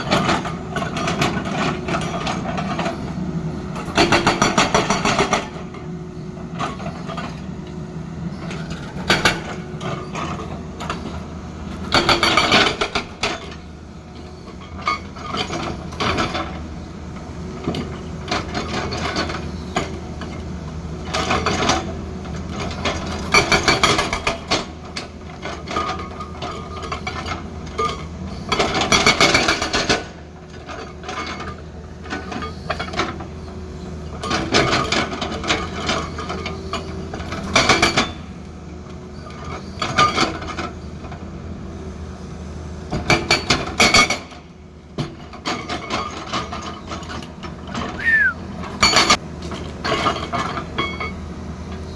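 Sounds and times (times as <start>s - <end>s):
excavator diesel engine running: 0.0s - 29.7s, 44.5s - 51.9s.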